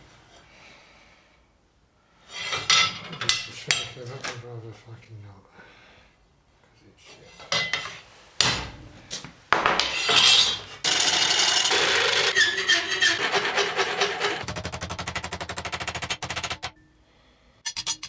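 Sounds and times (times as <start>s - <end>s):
rasping scraping on metal: 10.9s - 16.7s
rapid even taps: 14.3s - 16.8s
sharp knocks on metal: 14.4s - 16.8s.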